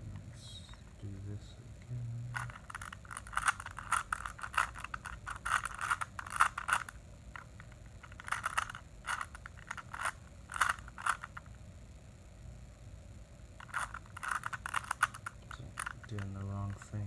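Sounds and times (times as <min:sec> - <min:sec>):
puzzle cube clacking: 0:02.3 - 0:11.5, 0:13.6 - 0:16.9.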